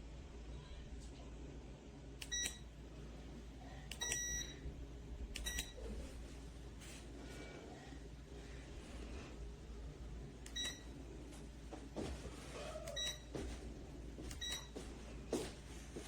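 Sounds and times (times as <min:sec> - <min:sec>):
low steady hum: 0:00.0 - 0:16.0
electronic appliance beeps: 0:02.2 - 0:02.7, 0:03.9 - 0:04.7, 0:05.4 - 0:05.8, 0:10.5 - 0:10.9, 0:12.9 - 0:13.3, 0:14.3 - 0:14.8.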